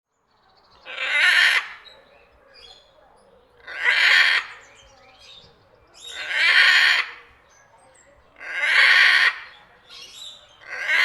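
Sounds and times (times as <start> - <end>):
parrot screeching: 0.9 - 1.7.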